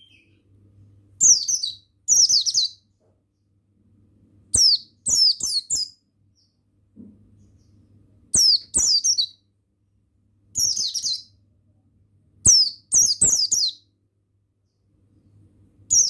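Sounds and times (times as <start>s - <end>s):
bird twittering: 1.2s - 2.8s, 4.6s - 6.6s, 7.4s - 9.4s, 10.6s - 11.3s, 12.4s - 13.8s.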